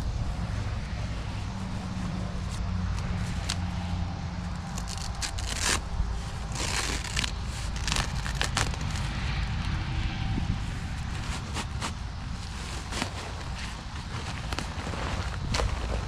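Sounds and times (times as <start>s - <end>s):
fabric bag of soil rustling: 0.0s - 9.4s, 10.8s - 16.0s.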